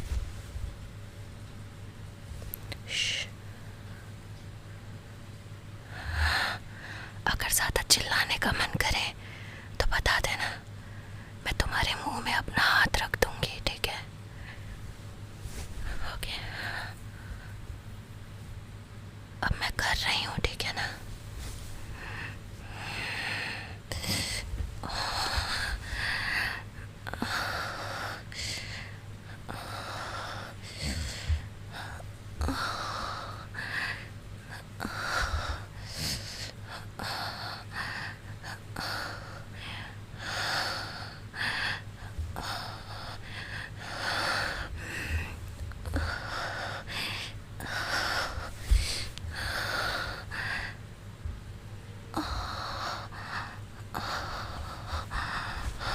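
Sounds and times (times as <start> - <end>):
faint steady hum: 0.0 - 55.9
woman breathing heavily: 5.8 - 7.2, 9.1 - 9.8, 10.8 - 11.4, 14.3 - 17.9, 20.8 - 51.4, 52.1 - 55.9.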